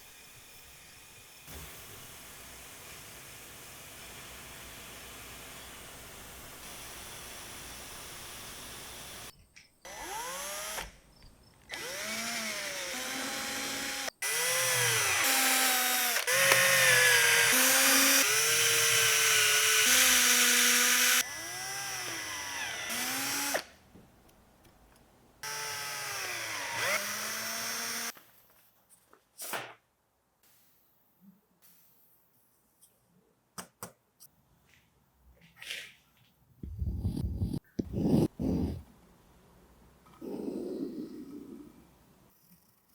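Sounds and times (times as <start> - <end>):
power drill whining: 9.9 - 11.0, 11.7 - 23.7, 25.4 - 28.1.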